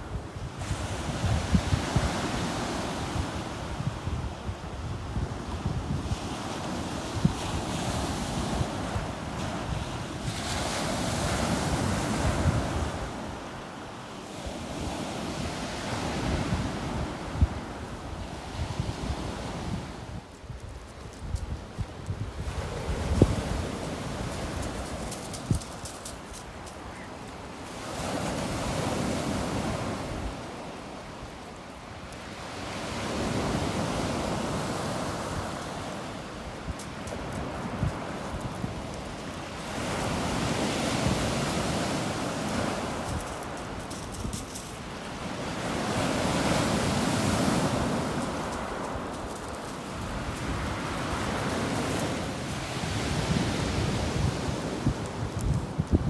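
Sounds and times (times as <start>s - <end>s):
wind buffeting microphone: 0.0s - 13.3s, 14.9s - 27.1s, 32.6s - 56.0s
waves breaking on shore: 22.4s - 56.0s.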